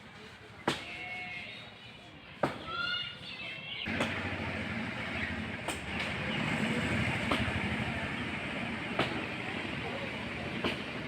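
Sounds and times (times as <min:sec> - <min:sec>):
steady mechanical rumble: 0:03.9 - 0:11.0.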